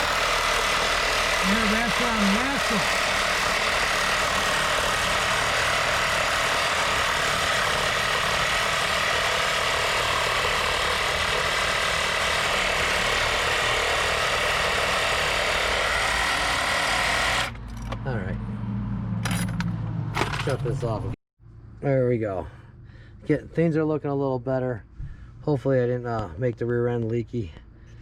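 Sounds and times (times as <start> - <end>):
truck engine running: 0.0 - 21.7.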